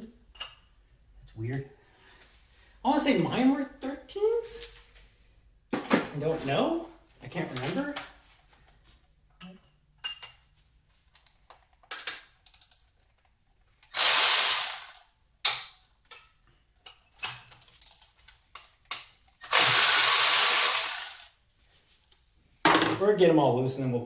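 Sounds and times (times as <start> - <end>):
ratchet wrench clicking: 14.0 - 15.0, 19.5 - 21.3
tools clinking: 14.0 - 15.0, 19.4 - 21.3.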